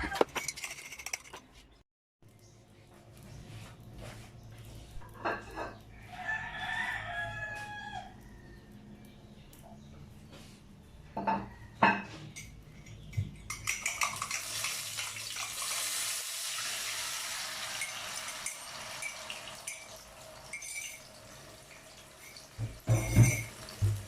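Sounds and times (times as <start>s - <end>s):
metal cookware clanking: 0.0s - 1.6s, 11.2s - 15.8s, 17.4s - 24.0s.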